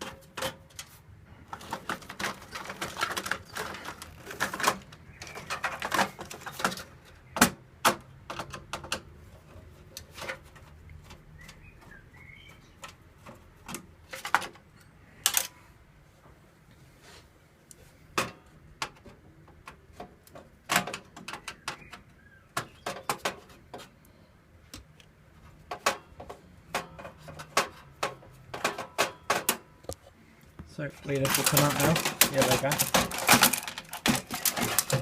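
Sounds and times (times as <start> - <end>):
plastic and metal parts clicking: 0.0 - 15.6, 31.0 - 35.0.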